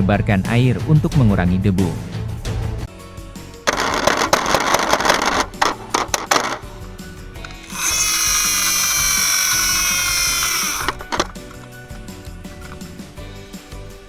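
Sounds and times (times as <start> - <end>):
background music: 0.1 - 14.0
high whirring mechanism: 3.7 - 6.7, 7.4 - 11.4
ratcheting clicks: 3.7 - 6.7, 7.4 - 11.6.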